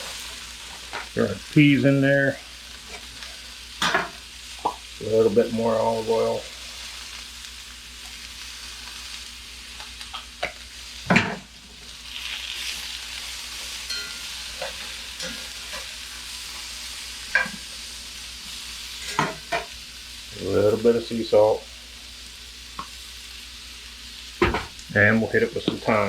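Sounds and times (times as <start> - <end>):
vegetables sizzling in a frying pan: 0.0 - 26.0
utensil knocking against pan: 24.4 - 24.8.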